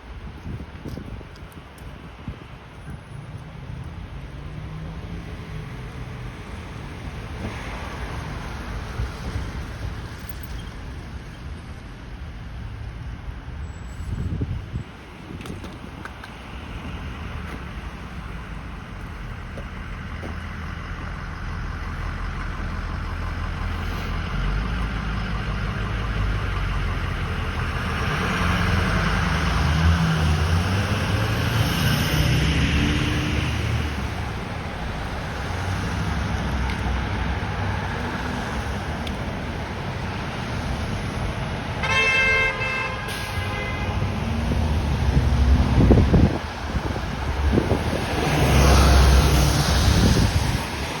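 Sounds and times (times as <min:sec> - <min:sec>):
road traffic: 0:00.0 - 0:51.0
vehicle passing: 0:19.0 - 0:41.6
vehicle horn: 0:41.8 - 0:44.1.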